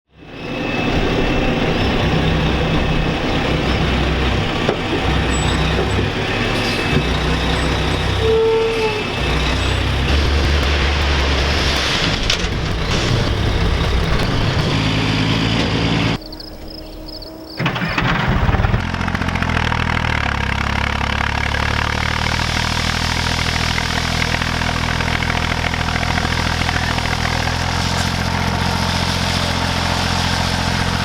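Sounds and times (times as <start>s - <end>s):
large engine running hard: 0.1s - 16.2s, 17.6s - 31.0s
brief tone: 0.2s - 10.7s, 16.2s - 18.2s.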